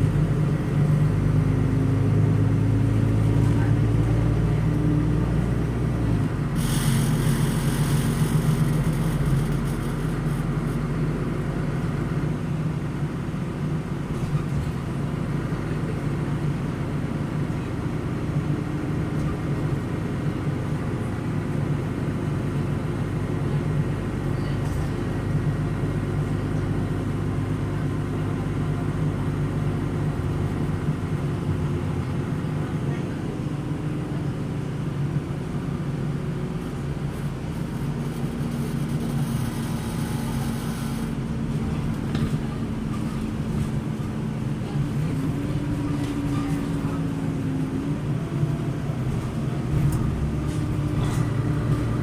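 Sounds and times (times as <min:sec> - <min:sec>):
bus diesel engine drone: 0:00.0 - 0:52.0
air hissing: 0:06.6 - 0:08.2.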